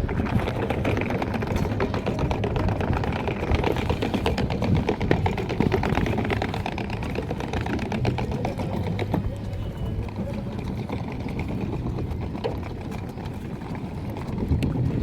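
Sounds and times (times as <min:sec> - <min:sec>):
boat engine running: 0:00.0 - 0:15.0.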